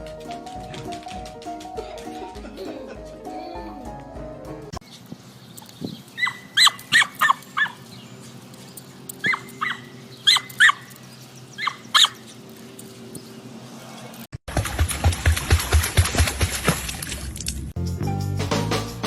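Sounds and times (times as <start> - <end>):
dog yapping: 6.2 - 7.8, 9.2 - 10.9, 11.6 - 12.2.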